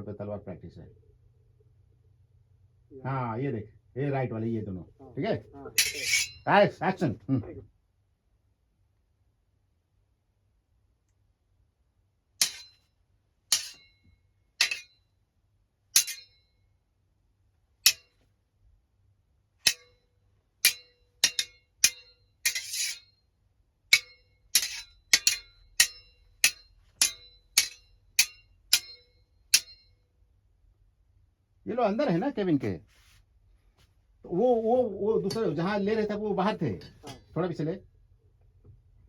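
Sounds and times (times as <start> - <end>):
steel swords clashing: 5.8 - 6.5, 12.4 - 12.9, 13.5 - 14.0, 14.6 - 15.0, 16.0 - 16.4, 17.8 - 18.2, 19.6 - 20.0, 20.6 - 23.1, 23.9 - 29.9.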